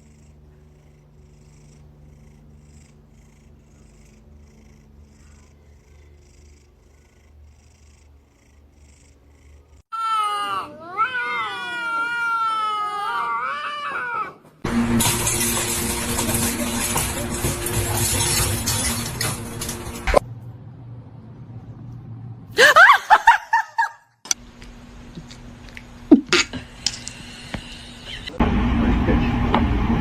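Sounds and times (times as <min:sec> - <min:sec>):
cat crying high-pitched: 0:09.9 - 0:14.4.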